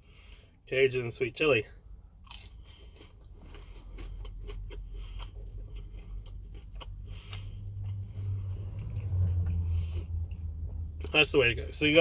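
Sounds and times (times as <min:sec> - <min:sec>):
person chewing food: 0:02.1 - 0:11.1.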